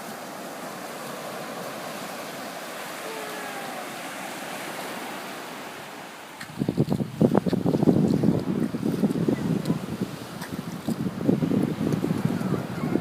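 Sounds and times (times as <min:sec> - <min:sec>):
ocean surf washing: 0:00.0 - 0:13.0
wind buffeting microphone: 0:06.4 - 0:13.0.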